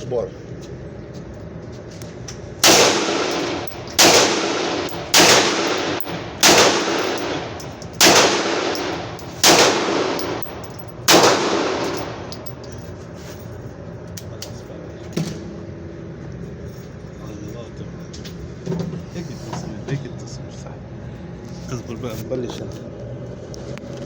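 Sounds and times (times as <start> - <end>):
pistol shots with echo: 2.6 - 12.4.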